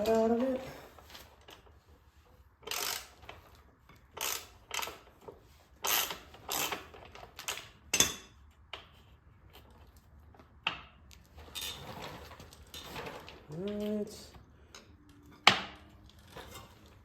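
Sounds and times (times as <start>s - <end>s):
metal tools clinking and scraping: 11.4s - 17.0s.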